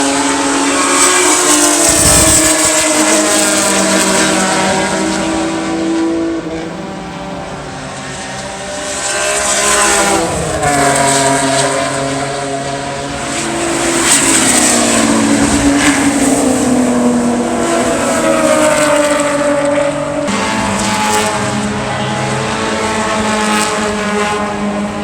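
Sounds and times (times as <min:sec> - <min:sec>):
race car engines at speed: 0:00.0 - 0:25.0
car passing by: 0:01.2 - 0:05.5.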